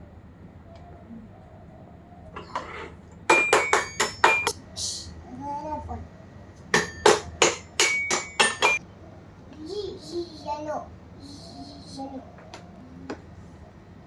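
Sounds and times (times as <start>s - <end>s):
quick sharp ringing taps: 3.3s - 4.6s, 6.8s - 8.8s.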